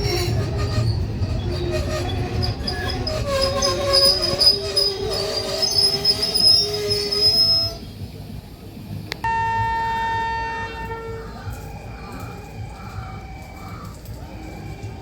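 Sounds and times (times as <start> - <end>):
train wheels squealing: 0.0 - 8.1
train rumble: 0.0 - 15.0.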